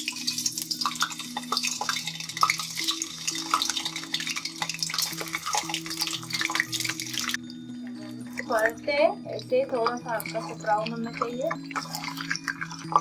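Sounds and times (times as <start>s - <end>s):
eggs sizzling in hot oil: 0.0s - 13.0s
utensil clicking and scraping pan: 9.8s - 13.0s.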